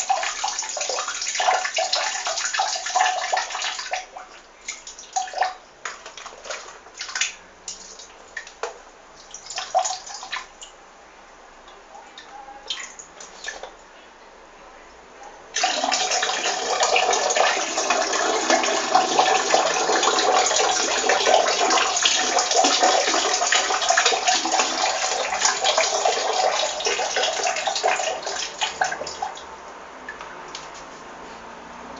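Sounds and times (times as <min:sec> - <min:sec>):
person urinating into water: 0:15.6 - 0:29.4.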